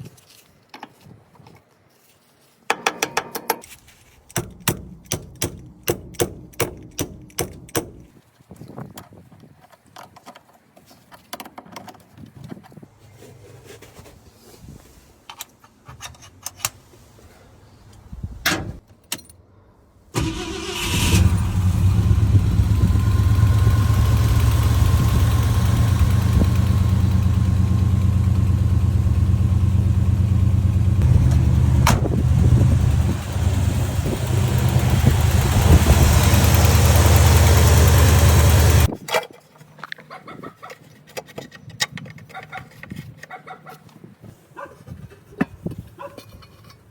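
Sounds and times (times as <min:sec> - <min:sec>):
truck engine running: 0:20.2 - 0:38.9.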